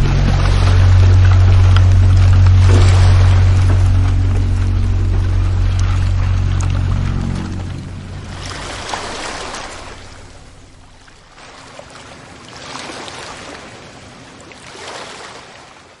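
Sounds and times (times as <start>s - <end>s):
low impact rumble: 0.0s - 11.6s
water washing and rushing: 0.0s - 16.0s.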